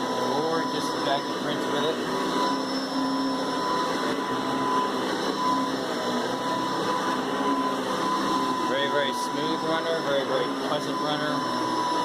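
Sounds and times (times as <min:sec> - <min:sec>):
vacuum cleaner running: 0:00.0 - 0:12.0.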